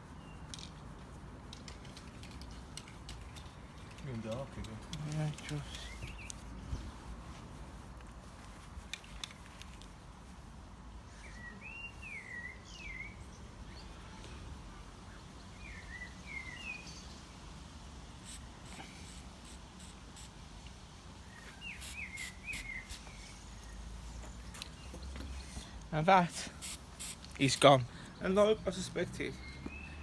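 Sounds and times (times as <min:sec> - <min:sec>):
outdoor background noise: 0:00.0 - 0:30.0
bird chirping: 0:05.3 - 0:06.9, 0:11.1 - 0:14.2, 0:15.1 - 0:17.3, 0:21.3 - 0:25.2, 0:28.1 - 0:30.0.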